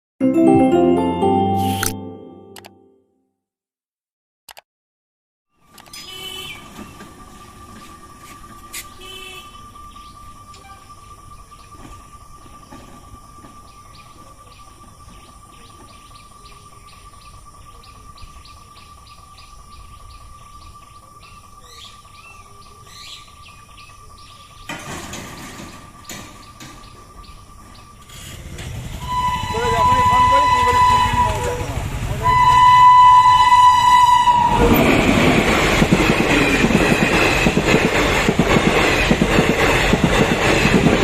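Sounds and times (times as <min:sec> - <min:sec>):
steady high-pitched tone: 0:00.2 - 0:03.0, 0:29.0 - 0:34.7
outdoor background noise: 0:05.5 - 0:41.0.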